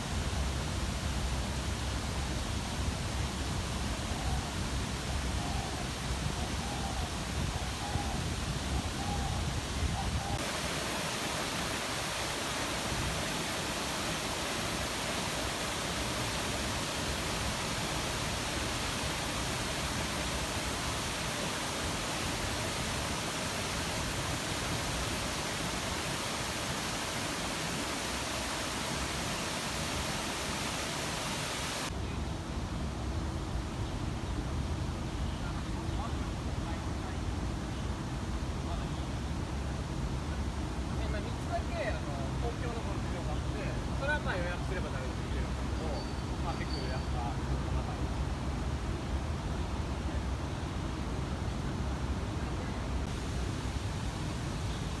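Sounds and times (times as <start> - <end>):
waterfall rushing: 10.4 - 31.9, 53.0 - 55.0.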